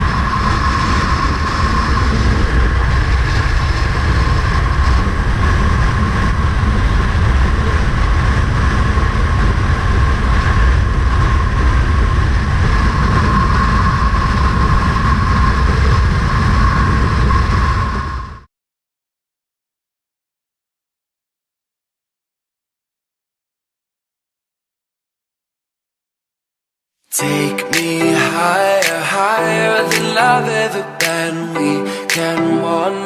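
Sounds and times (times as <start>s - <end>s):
vehicle running rumble and whine: 0.0s - 18.5s.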